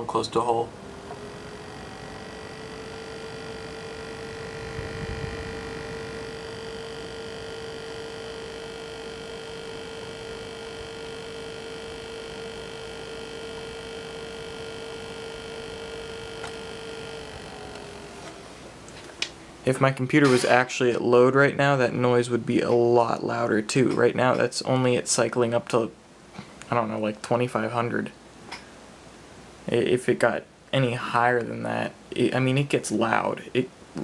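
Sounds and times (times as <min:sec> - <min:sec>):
pump whine: 0:00.0 - 0:22.2.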